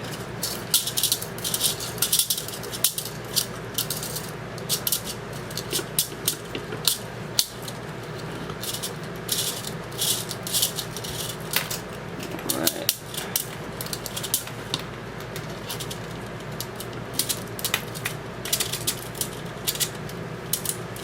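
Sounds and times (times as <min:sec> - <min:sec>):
metal spring rattling on plastic: 0:00.1 - 0:07.8, 0:15.4 - 0:21.0.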